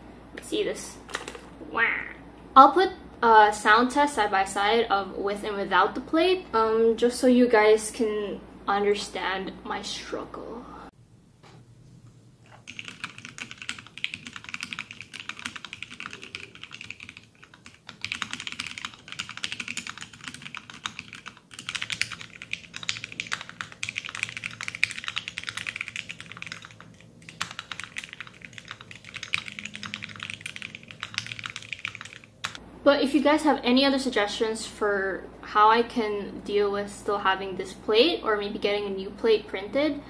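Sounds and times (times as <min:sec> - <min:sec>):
mechanical keyboard typing: 0:12.5 - 0:32.6.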